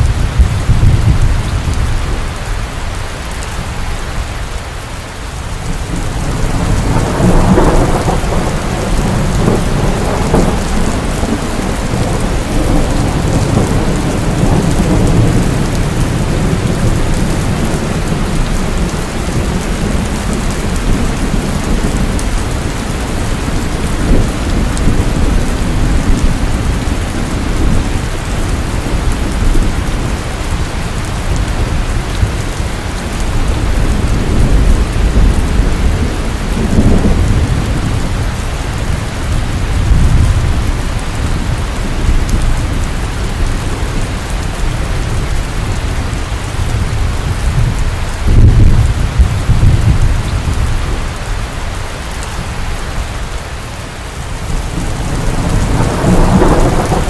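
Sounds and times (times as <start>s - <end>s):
low rumble of thunder: 0.0s - 2.4s, 5.6s - 57.0s
rain falling steadily: 0.0s - 57.0s.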